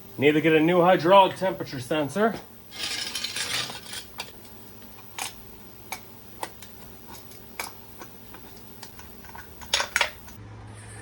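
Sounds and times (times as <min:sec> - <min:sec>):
metal tools clicking and clinking: 0:02.7 - 0:04.4.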